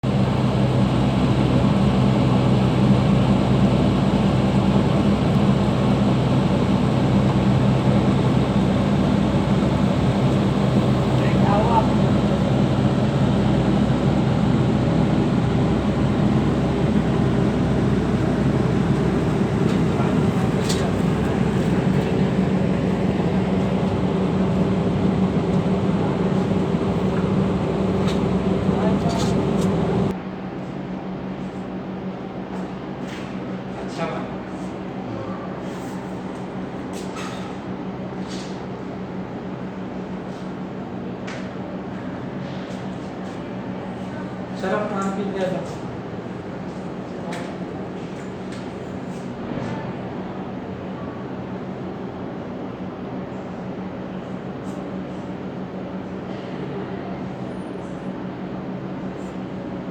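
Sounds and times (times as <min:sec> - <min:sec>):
fan air rushing: 0:00.0 - 0:30.4
air conditioner hum: 0:00.0 - 0:59.9.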